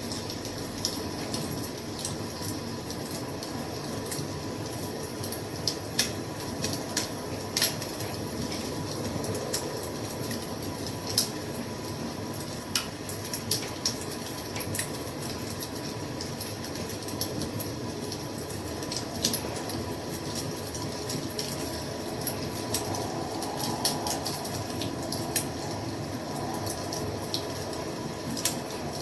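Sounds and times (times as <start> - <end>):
wood fire crackling: 0.0 - 29.0.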